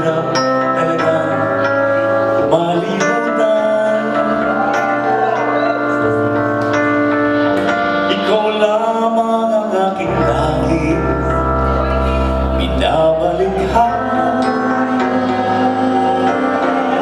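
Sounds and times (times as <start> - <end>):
live band playing: 0.0 - 17.0
person singing: 0.0 - 17.0
deep bass: 5.7 - 17.0.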